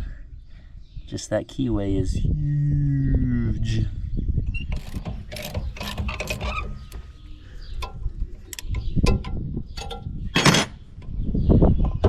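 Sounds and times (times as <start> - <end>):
metal tools clinking and knocking: 4.7 - 10.8
metal scrape: 4.8 - 7.2.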